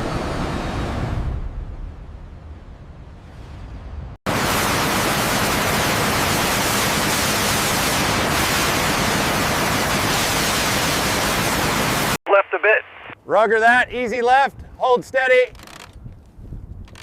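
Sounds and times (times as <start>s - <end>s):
loud steady static hiss: 4.3s - 13.2s.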